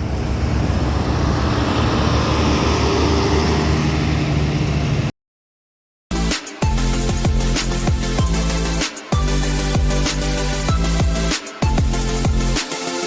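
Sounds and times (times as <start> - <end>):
tyre and road noise: 0.0 - 5.1
vehicle engine running: 0.0 - 5.1.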